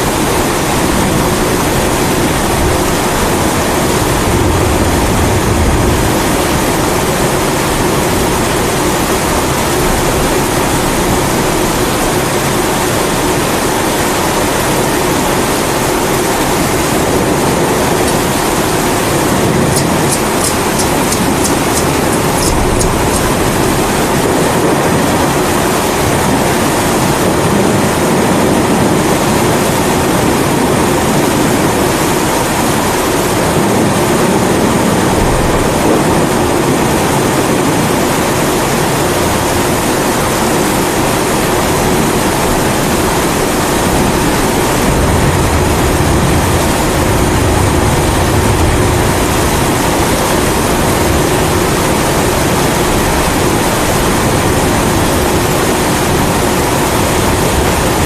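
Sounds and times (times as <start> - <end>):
low rumble of thunder: 0.0 - 32.0, 33.0 - 39.5, 40.2 - 58.0
steady rain: 0.0 - 58.0
stove burner roaring: 17.0 - 24.3.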